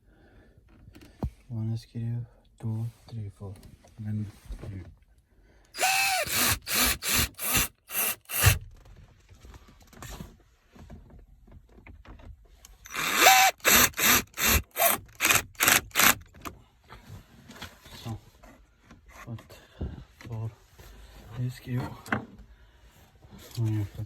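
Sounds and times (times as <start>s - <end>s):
power drill driving screws: 5.8s - 8.6s, 12.8s - 16.4s.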